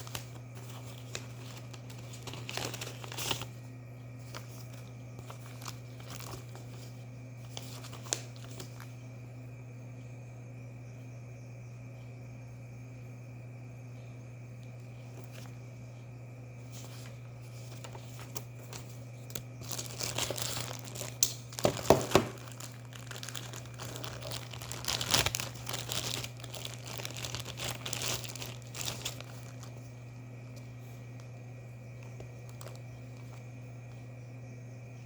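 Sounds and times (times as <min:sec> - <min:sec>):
plastic packaging crinkling: 0:00.0 - 0:03.6, 0:04.2 - 0:08.9, 0:16.8 - 0:30.1, 0:32.0 - 0:33.4
low steady hum: 0:00.0 - 0:35.0.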